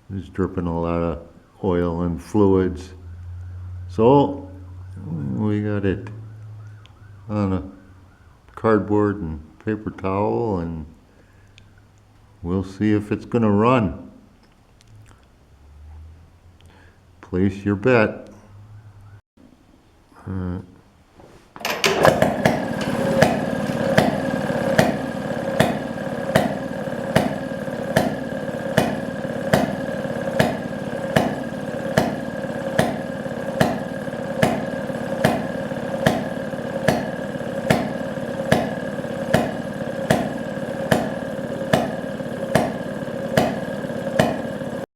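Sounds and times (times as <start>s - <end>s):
small engine running: 1.4s - 8.3s, 21.6s - 44.9s.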